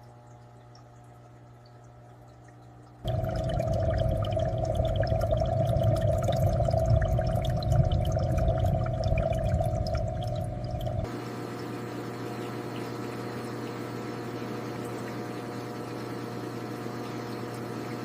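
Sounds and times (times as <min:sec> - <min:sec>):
aquarium water bubbling: 0:00.0 - 0:18.0
water trickle: 0:00.0 - 0:18.0
steady hum: 0:02.4 - 0:18.0
low rumble: 0:03.1 - 0:11.1.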